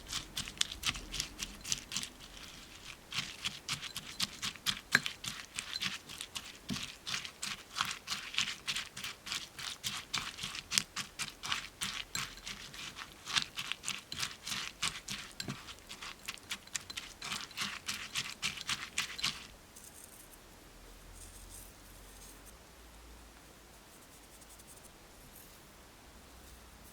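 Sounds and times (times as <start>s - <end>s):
utensil tapping and clicking: 0.0s - 19.5s.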